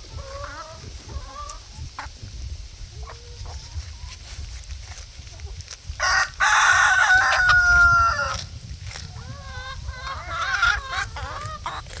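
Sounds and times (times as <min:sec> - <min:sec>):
hens clucking: 0:00.0 - 0:12.0
rooster crowing: 0:06.0 - 0:08.4.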